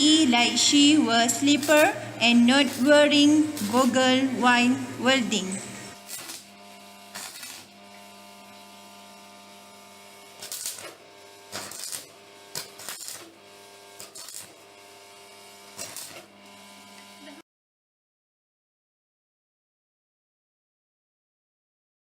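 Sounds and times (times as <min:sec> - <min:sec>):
welding arc crackle: 0:00.0 - 0:17.4
welding machine humming: 0:00.0 - 0:17.4.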